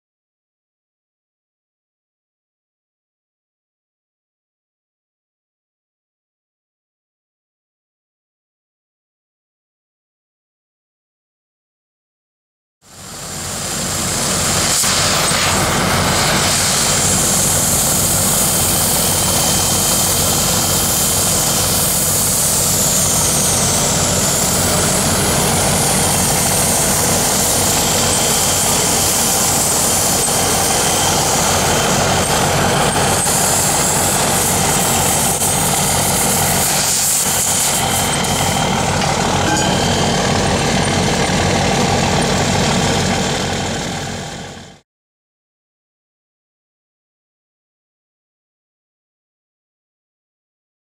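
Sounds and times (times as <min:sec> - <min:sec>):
cutting torch hissing: 0:12.9 - 0:44.6
engine drone: 0:12.9 - 0:44.8.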